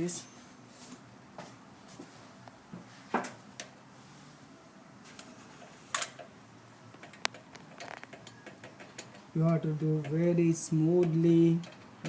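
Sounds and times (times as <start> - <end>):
hand tools and metal parts clicking: 6.9 - 12.0.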